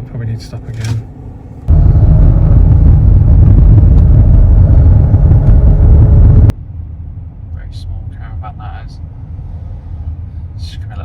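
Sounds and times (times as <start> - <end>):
car rumbling on road: 0.8 - 8.2.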